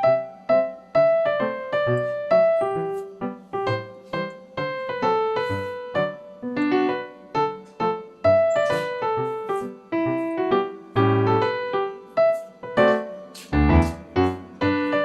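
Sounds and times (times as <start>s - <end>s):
piano melody: 0.0s - 15.0s.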